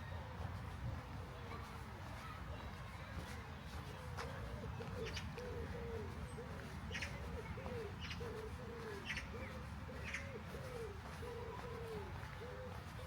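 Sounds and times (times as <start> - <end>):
pigeon cooing: 4.8 - 13.0.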